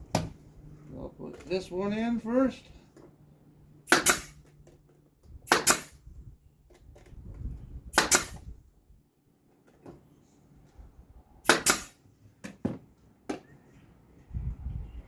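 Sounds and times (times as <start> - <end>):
brad nailer firing into wood: 3.8 - 4.5, 5.4 - 6.0, 7.9 - 8.5, 11.4 - 12.0.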